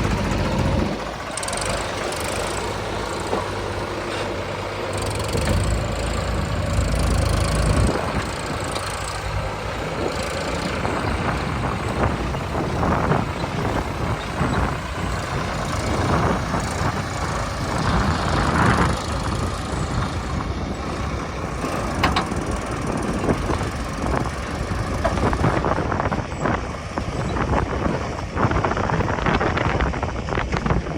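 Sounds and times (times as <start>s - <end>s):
heavy diesel machinery running: 0.0s - 30.9s
irregular knocks and rattles: 21.5s - 25.6s.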